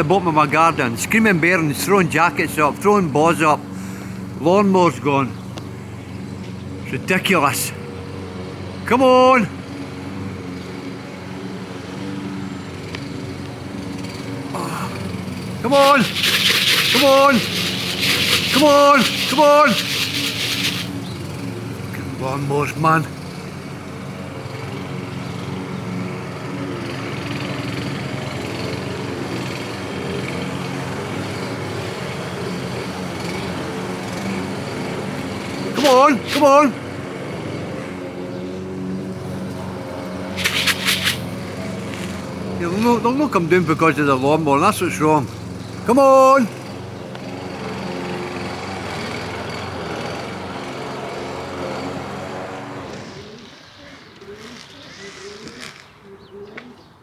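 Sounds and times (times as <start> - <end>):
lawnmower engine running: 13.6 - 22.1.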